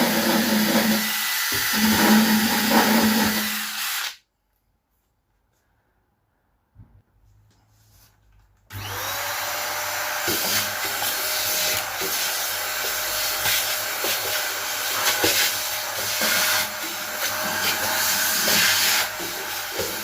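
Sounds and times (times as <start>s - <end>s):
wire brush drill scouring metal: 0.0s - 4.2s, 8.8s - 20.0s.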